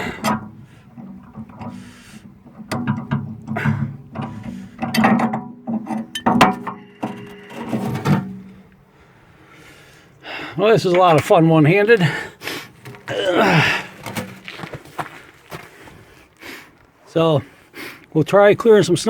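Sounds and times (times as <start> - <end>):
metal clinks and knocks: 0.0 - 8.8.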